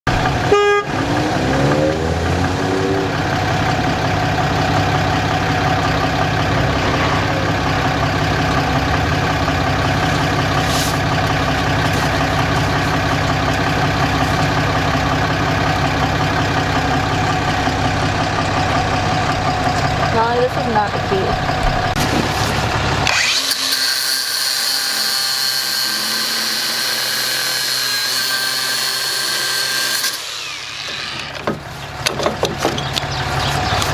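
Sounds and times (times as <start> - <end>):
vehicle engine running: 0.1 - 23.3, 31.3 - 33.9.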